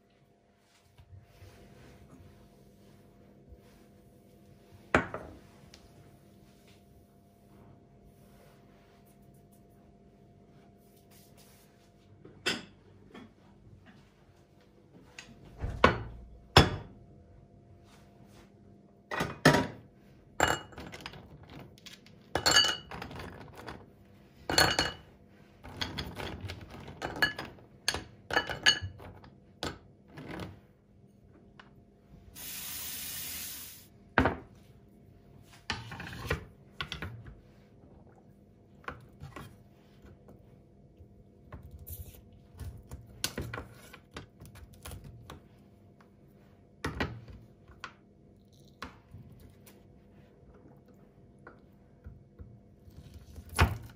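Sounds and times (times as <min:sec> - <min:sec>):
dishes and glassware clinking: 0:12.4 - 0:13.3, 0:20.4 - 0:21.2, 0:22.3 - 0:23.2, 0:24.5 - 0:25.1, 0:25.7 - 0:29.2
steady hiss: 0:32.4 - 0:33.9.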